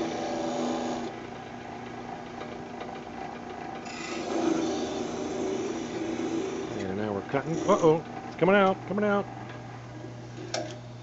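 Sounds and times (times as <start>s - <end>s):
drill press humming: 0.0s - 11.0s
hacksaw scraping spinning metal: 3.8s - 8.1s.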